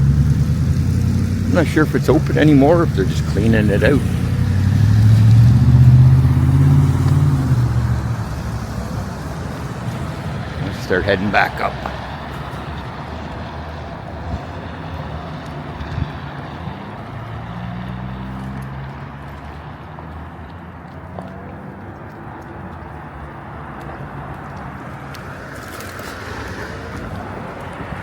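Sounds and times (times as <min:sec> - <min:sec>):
electric bike rumble: 0:00.0 - 0:28.0
road noise: 0:00.0 - 0:28.0
wind rushing on microphone: 0:01.3 - 0:17.0, 0:26.3 - 0:28.0.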